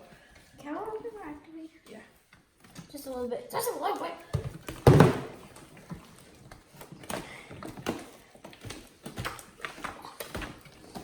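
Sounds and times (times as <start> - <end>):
hands squishing slime: 5.4 - 11.0.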